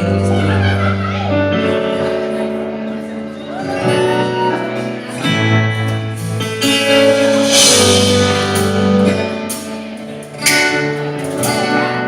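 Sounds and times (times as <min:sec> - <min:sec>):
acoustic guitar strumming chords: 0:04.8 - 0:12.0.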